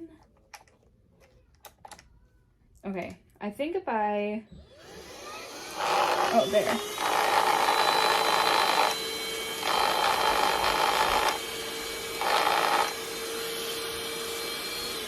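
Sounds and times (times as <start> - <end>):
vacuum motor whine: 4.6 - 15.0.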